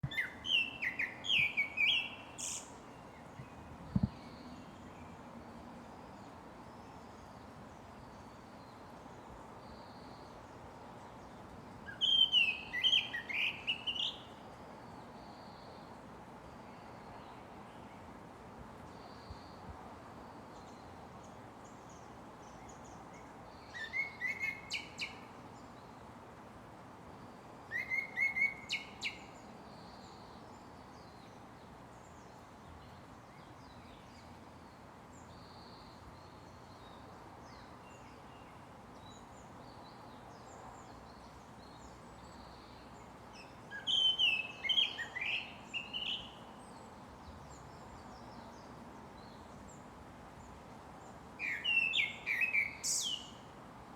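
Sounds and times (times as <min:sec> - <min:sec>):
background hiss: 0:00.0 - 0:53.9
thrush whistled song: 0:43.8 - 0:46.4.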